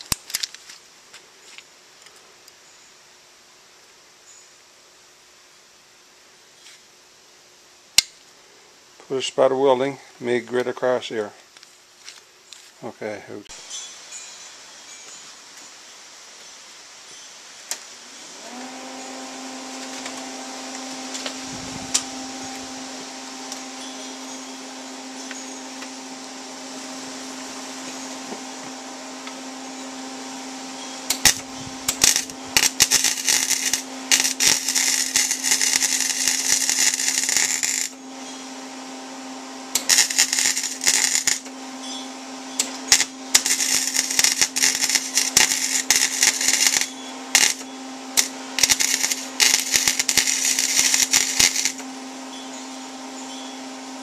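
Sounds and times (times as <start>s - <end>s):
grinder rasping on steel weld: 17.7s - 53.3s
grinder motor whining: 18.0s - 54.0s.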